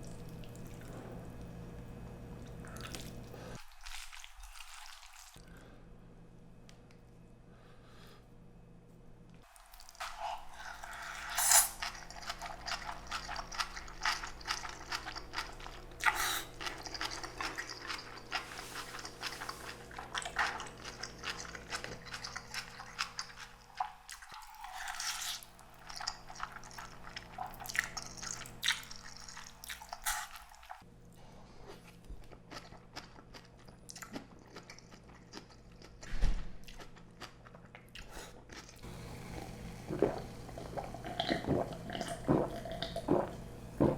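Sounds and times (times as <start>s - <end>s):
wet chewing and smacking: 11.8s - 30.8s, 32.0s - 38.8s, 39.4s - 43.9s.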